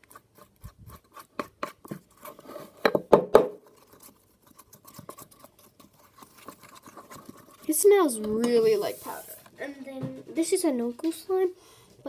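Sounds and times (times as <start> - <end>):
spoon scraping slime in a bowl: 0.0 - 2.9, 3.6 - 9.6.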